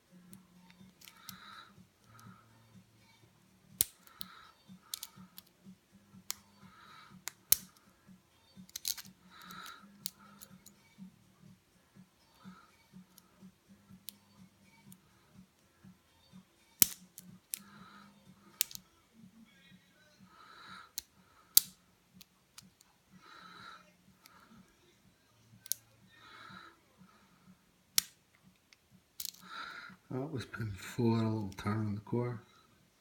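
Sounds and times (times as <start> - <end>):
lock pick scraping pins: 8.6 - 10.7.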